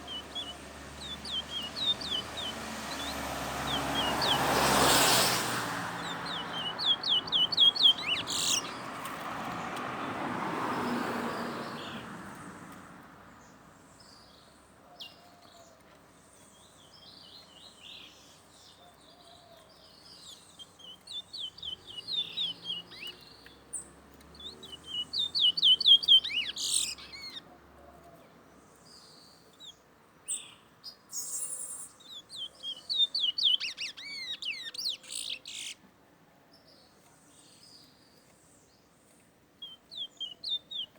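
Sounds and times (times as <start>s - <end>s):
finch singing high twittering notes: 0.0s - 8.9s, 19.8s - 27.4s, 29.6s - 35.8s, 39.6s - 40.9s.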